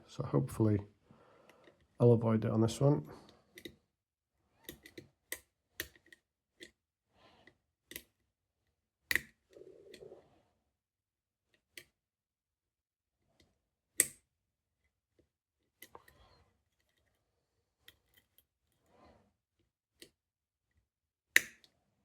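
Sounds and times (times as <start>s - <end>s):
metallic clicks of lock picking: 4.6s - 6.8s, 7.9s - 8.2s, 14.0s - 14.2s.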